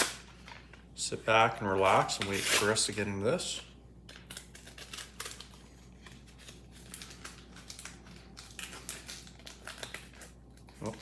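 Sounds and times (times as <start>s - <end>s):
packaging crinkling and rustling: 0.0s - 11.0s.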